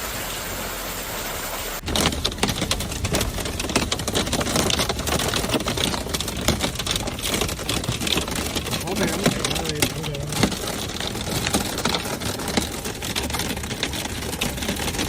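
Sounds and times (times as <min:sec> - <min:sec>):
heavy rain hissing: 0:00.0 - 0:03.0
hailstones clattering on hard surface: 0:01.8 - 0:15.0.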